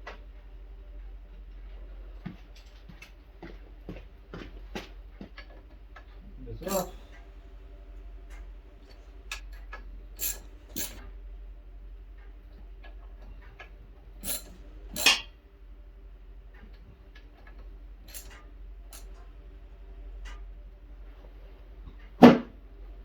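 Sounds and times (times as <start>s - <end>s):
faint steady hum: 0.0s - 23.0s
metal tools clicking and clinking: 6.6s - 7.2s, 8.8s - 11.1s, 14.2s - 15.3s, 18.1s - 19.2s.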